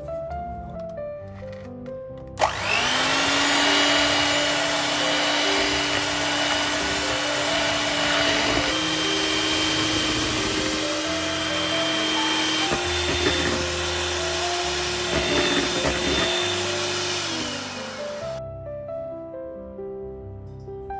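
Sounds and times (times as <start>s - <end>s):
electric mixer whining: 2.4s - 18.4s.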